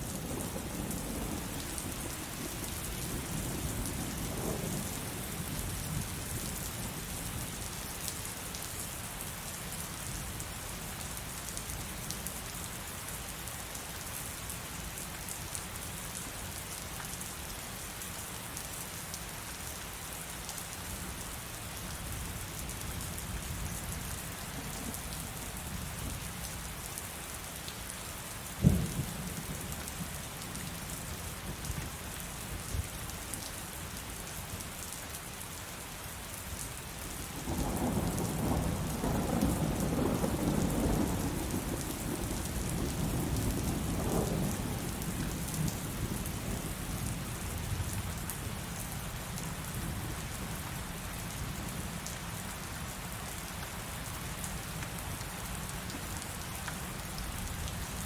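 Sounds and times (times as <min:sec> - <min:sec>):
heavy rain: 0:00.0 - 0:58.0
rolling thunder rumble: 0:37.5 - 0:46.2.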